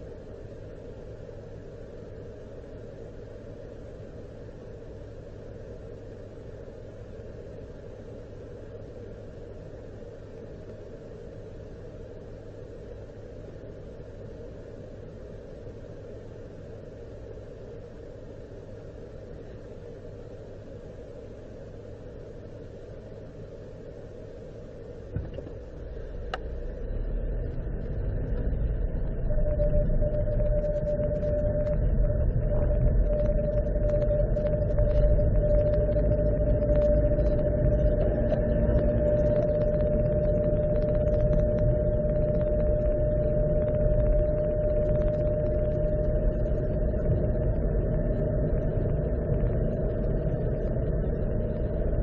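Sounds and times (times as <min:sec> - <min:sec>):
single-pitched whine: 0:00.0 - 0:52.0
car cabin low rumble: 0:25.0 - 0:52.0
car running noise: 0:25.1 - 0:52.0
click: 0:26.3 - 0:26.5.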